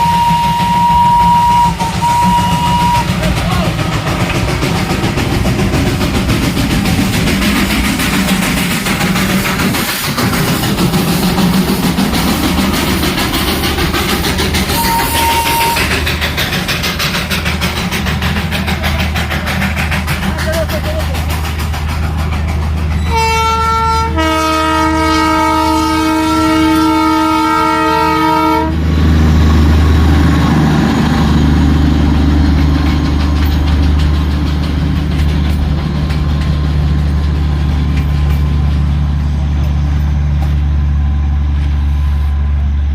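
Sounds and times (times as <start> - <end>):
train horn blasts: 0.0 - 3.2, 14.7 - 16.0, 23.0 - 28.8
train rumbling: 0.0 - 42.9.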